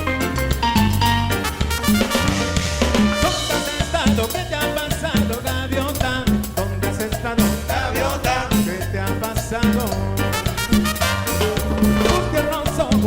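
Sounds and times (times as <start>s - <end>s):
salsa dance music: 0.0s - 13.0s.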